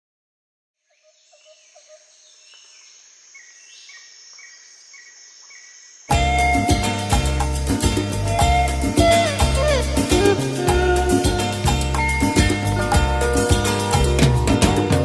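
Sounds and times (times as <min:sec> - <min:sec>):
birds chirping: 0:00.8 - 0:14.6
insect buzz: 0:00.9 - 0:14.0
loud latin-style music: 0:06.1 - 0:15.0.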